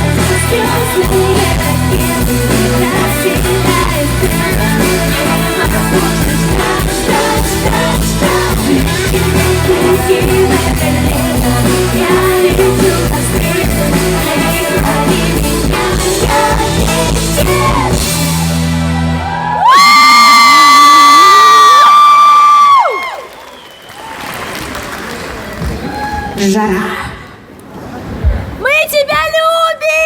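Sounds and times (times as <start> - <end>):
woman singing: 0.0 - 18.2
live pop-rock band: 0.0 - 23.0.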